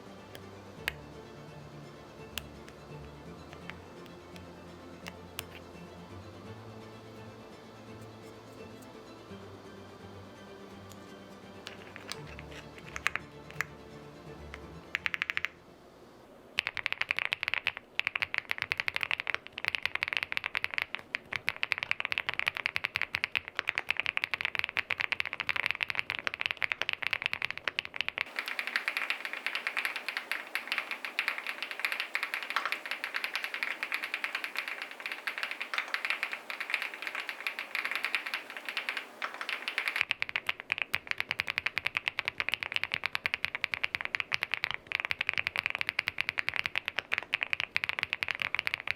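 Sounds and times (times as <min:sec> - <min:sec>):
mechanical keyboard typing: 0:14.9 - 0:15.6, 0:16.6 - 0:48.9.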